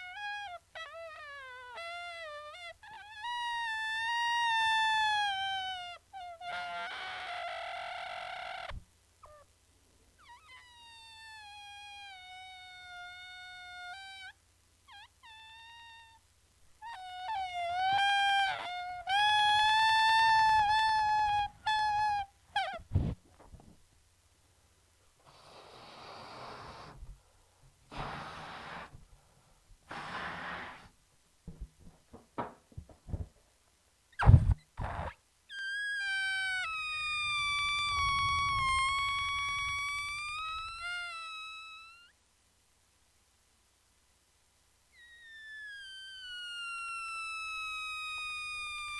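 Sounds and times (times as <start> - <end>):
balloon deflating with squeal: 0.0 - 9.4, 10.2 - 16.2, 16.8 - 23.2, 25.2 - 27.2, 27.9 - 29.1, 29.8 - 31.0, 34.1 - 42.2, 44.9 - 48.9
air hissing out of balloon: 25.2 - 27.3, 27.9 - 29.2, 29.8 - 31.0, 34.2 - 42.1, 44.9 - 48.9.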